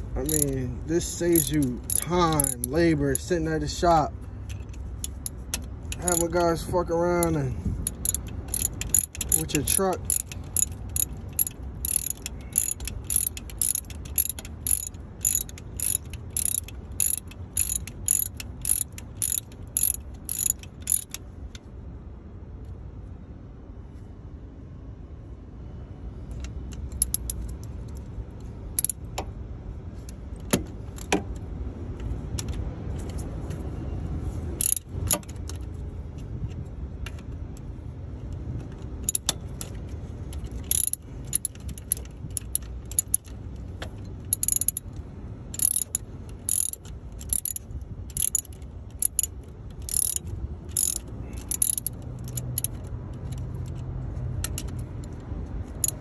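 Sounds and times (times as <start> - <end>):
steady low rumble: 0.0 - 56.0
hand tools clinking on metal: 0.2 - 3.3, 5.9 - 6.5, 7.2 - 21.0.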